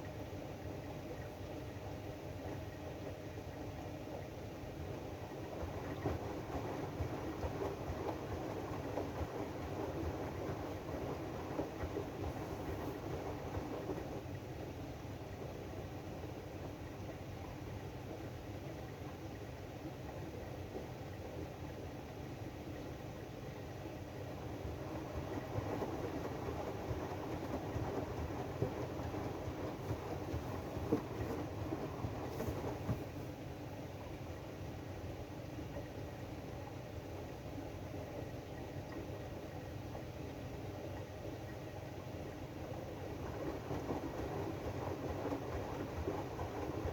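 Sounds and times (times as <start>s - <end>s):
washing machine drum churning: 24.8s - 33.3s, 43.0s - 46.9s
washing machine drum rumbling: 27.6s - 33.3s.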